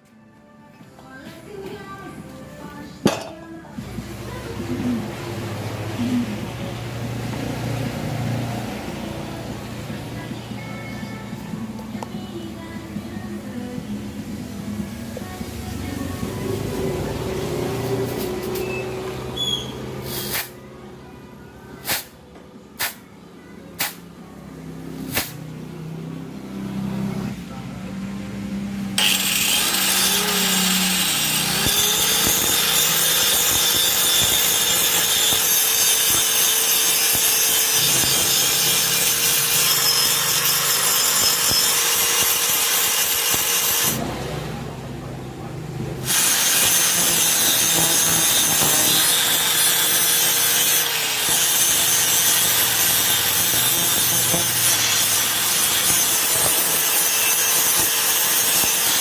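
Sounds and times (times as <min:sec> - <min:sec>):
abrasive grinding on metal: 0:29.0 - 0:44.0, 0:46.0 - 0:59.0
power tool motor whine: 0:29.0 - 0:44.0, 0:46.0 - 0:59.0.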